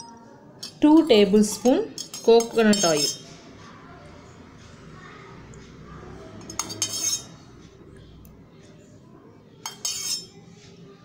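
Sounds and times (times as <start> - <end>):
spoon clinking against container: 0.6 - 3.2, 6.4 - 7.4, 9.6 - 10.3.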